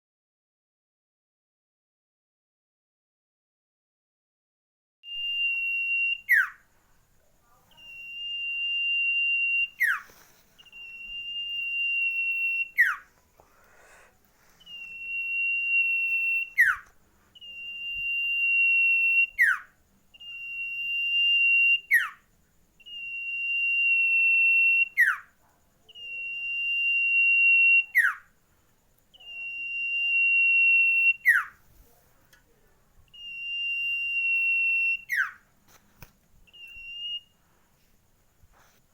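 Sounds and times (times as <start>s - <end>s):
bird whistling song: 5.0s - 6.7s, 7.7s - 13.1s, 14.6s - 22.2s, 22.8s - 28.3s, 29.1s - 31.6s, 33.1s - 35.4s, 36.4s - 37.4s.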